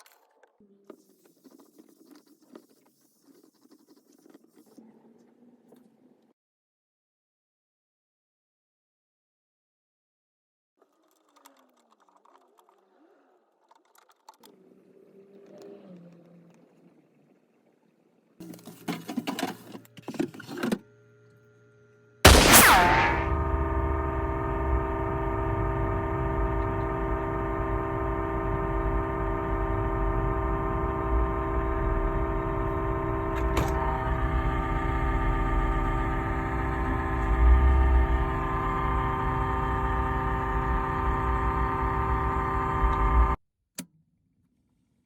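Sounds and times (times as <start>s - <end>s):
single click: 22.3s - 23.5s, 33.4s - 33.8s
refrigerator compressor humming: 22.3s - 43.4s.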